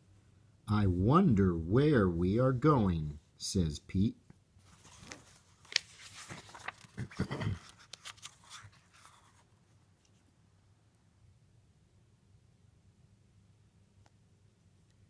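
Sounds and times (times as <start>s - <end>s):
paper rustling and crackling: 4.6s - 10.2s.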